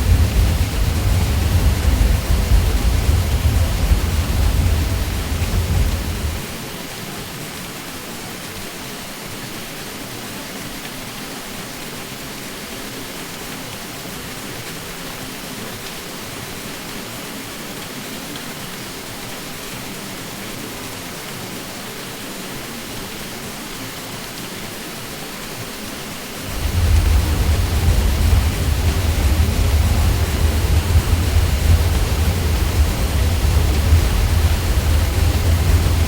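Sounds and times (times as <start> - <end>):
deep low rumble: 0.0 - 6.5, 26.4 - 36.0
ceiling fan drone: 0.0 - 6.7, 26.2 - 36.0.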